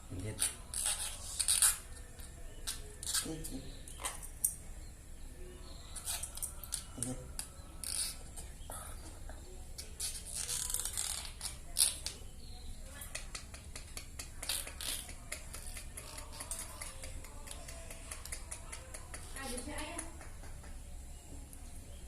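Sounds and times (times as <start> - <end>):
lovebird chattering: 12.9 - 20.3.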